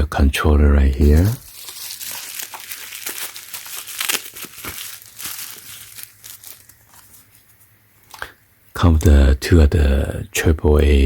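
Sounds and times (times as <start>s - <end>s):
packaging crinkling: 0.8s - 8.4s.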